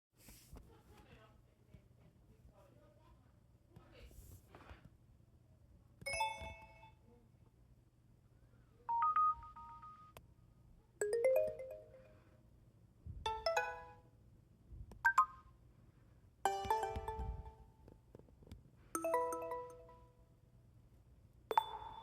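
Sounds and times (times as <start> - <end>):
tablet notification chimes: 6.1 - 6.9, 8.9 - 10.1, 11.0 - 12.2, 13.3 - 14.0, 15.1 - 15.4, 16.5 - 17.7, 19.0 - 20.1, 21.5 - 22.0.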